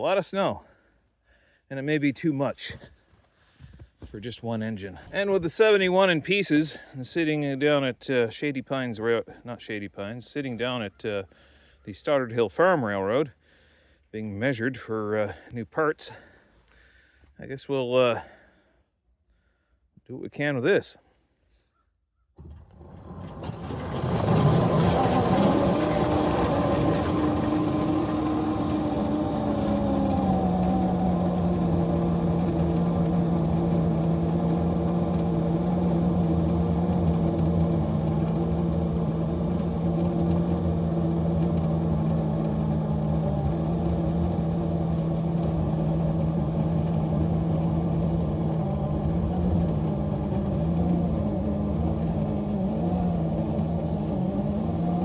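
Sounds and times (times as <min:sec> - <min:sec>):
locomotive engine running under load: 0:22.4 - 0:55.0.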